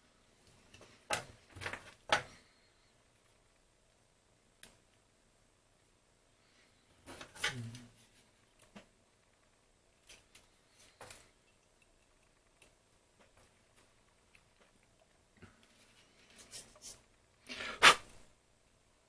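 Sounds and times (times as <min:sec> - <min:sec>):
scrape or rustle: 0:15.7 - 0:18.2.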